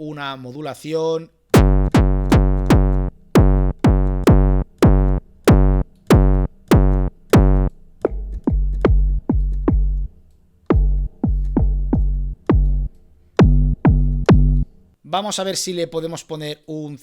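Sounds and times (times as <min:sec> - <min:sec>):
distorted synthesized kick drum: 0:01.6 - 0:10.0, 0:10.7 - 0:14.6.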